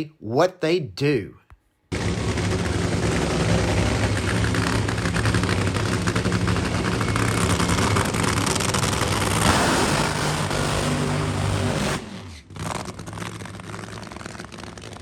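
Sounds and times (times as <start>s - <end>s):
supercharged race car engine running: 1.9s - 15.0s.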